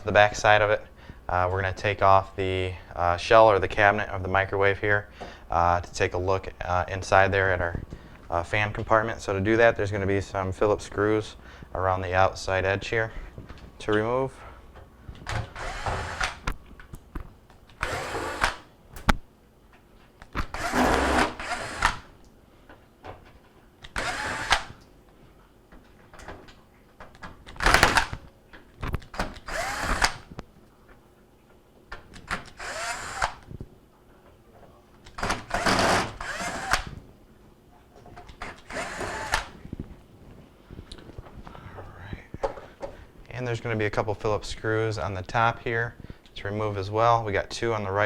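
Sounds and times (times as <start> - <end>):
power screwdriver whirring: 15.3 - 16.4, 17.8 - 18.7, 20.5 - 22.1, 23.8 - 24.8, 29.4 - 30.3, 32.4 - 33.4, 35.2 - 36.9, 38.4 - 39.5.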